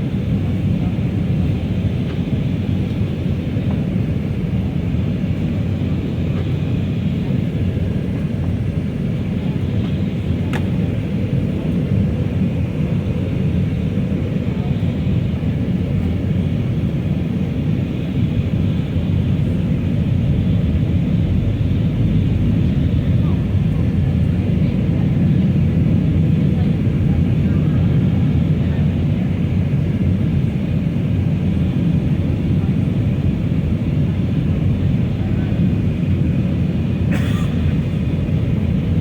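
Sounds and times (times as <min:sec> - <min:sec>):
airliner cabin rumble: 0:00.0 - 0:39.0.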